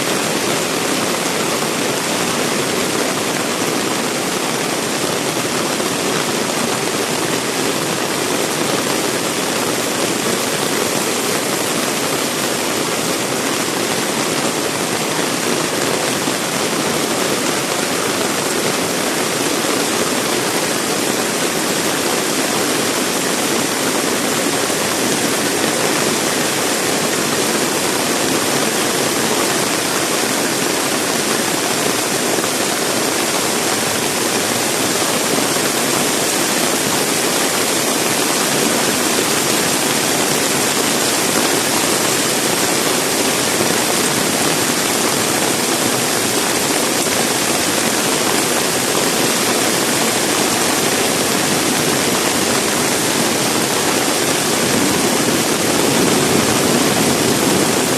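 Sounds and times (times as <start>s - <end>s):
heavy rain falling: 0.0s - 57.9s.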